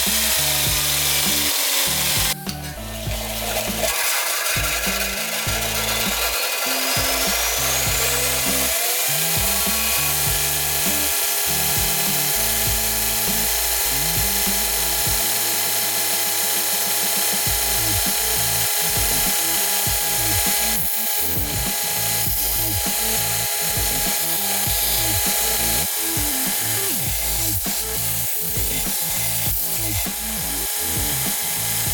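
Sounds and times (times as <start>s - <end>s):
bench grinder motor running: 0.0s - 31.9s
sanding belt turning: 0.0s - 31.9s.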